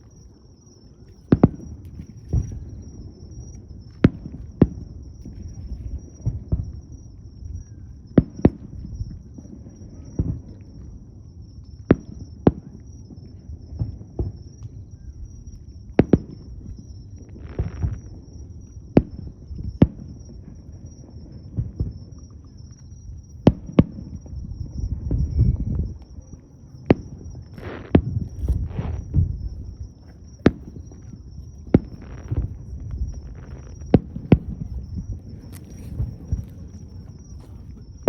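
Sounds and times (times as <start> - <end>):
hissing crackle: 26.8 - 38.0
firework shells bursting: 26.9 - 38.0.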